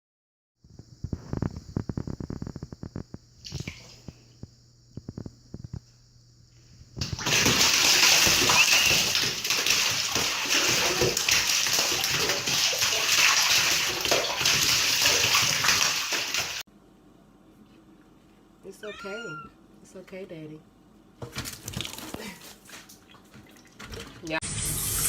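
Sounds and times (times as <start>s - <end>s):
water running and splashing: 7.0s - 16.6s.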